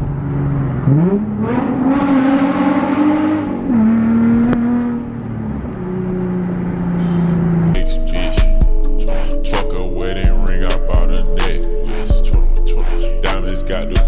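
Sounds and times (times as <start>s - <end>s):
car engine accelerating: 0.0s - 8.3s.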